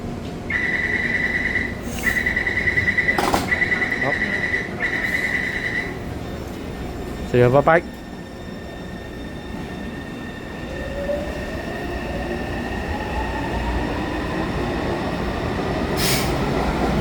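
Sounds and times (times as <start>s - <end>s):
low train rumble: 0.0s - 17.0s
electric train motor whine: 0.5s - 7.2s.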